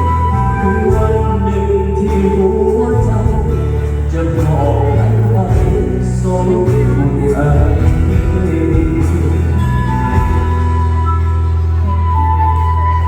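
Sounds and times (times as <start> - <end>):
live band music: 0.0 - 13.0
person singing: 0.0 - 13.0
steady bass: 0.0 - 13.0.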